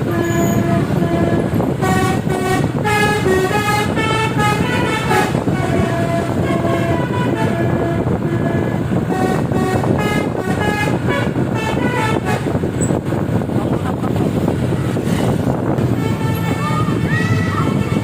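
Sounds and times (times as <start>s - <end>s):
steady rumble: 0.0s - 18.0s
musical air horn playing a tune: 0.1s - 12.6s.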